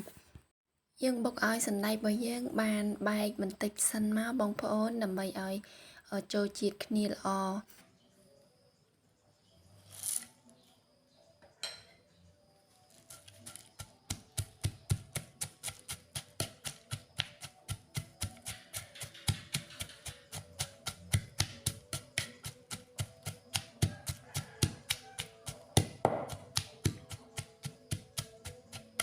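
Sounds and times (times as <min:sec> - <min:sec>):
pestle pounding in a mortar: 0:13.3 - 0:29.0.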